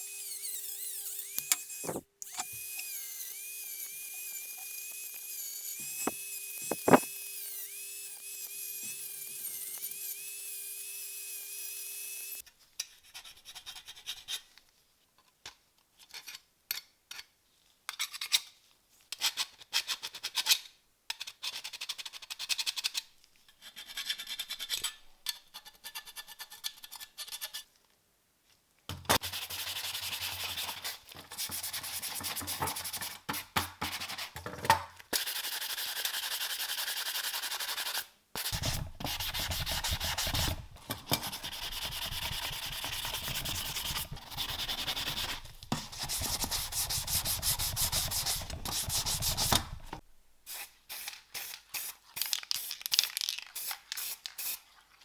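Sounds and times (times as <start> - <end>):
sandpaper scraping metal: 3.7 - 12.4, 29.2 - 33.2, 35.2 - 51.6.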